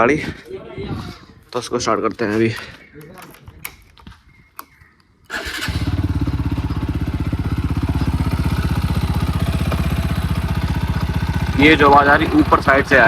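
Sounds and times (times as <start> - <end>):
click: 2.6 - 5.1
motorcycle engine starting and idling: 5.3 - 13.0.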